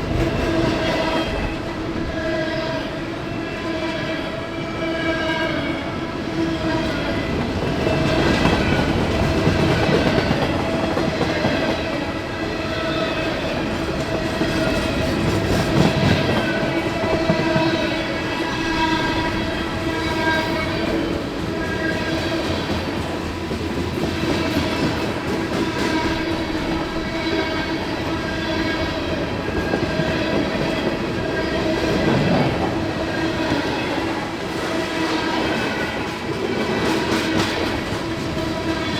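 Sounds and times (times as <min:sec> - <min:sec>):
train wheels clattering over rails: 0:07.2 - 0:18.0, 0:18.6 - 0:38.9.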